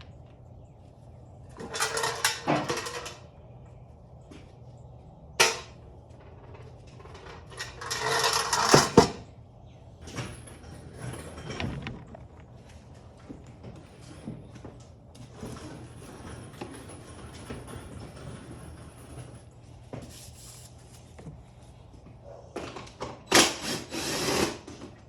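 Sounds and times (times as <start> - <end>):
metal tools clattering: 1.6 - 3.4, 5.4 - 5.8, 6.6 - 9.3.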